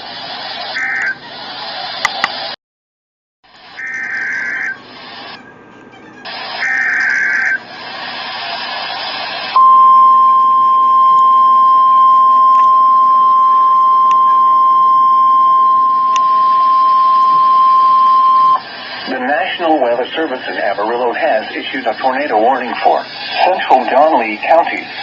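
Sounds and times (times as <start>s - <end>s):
static hiss: 0.0s - 2.6s, 6.3s - 9.6s, 15.8s - 25.0s
digital header screech: 6.1s - 7.7s
steady warning alarm tone: 6.3s - 7.6s, 9.5s - 24.7s.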